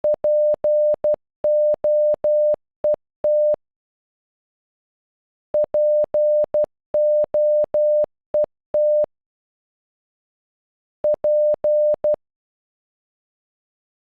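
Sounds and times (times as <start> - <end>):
morse code beeps: 0.0 - 2.6, 3.3 - 3.6, 5.6 - 9.1, 11.0 - 12.2.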